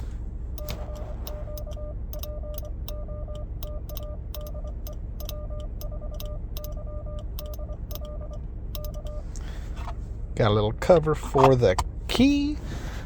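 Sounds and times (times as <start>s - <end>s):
low hum: 0.0s - 13.0s
morse code sidetone beeps: 0.6s - 9.3s.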